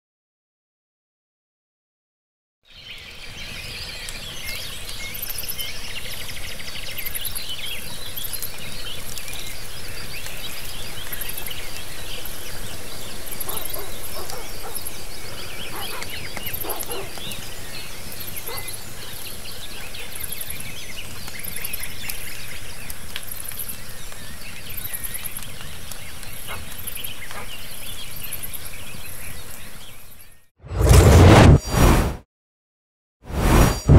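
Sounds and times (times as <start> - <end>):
birds chirping and calling: 13.1 - 18.7.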